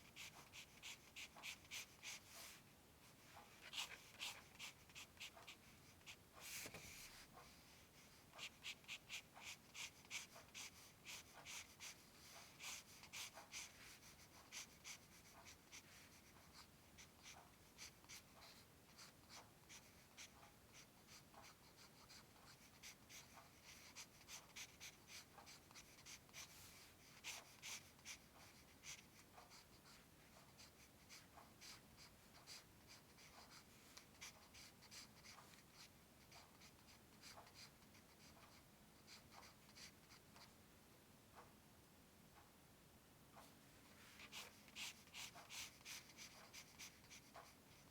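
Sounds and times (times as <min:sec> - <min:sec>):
drawing tool scratching on paper: 0:00.1 - 0:02.5, 0:03.5 - 0:07.2, 0:08.4 - 0:16.7, 0:44.2 - 0:47.8.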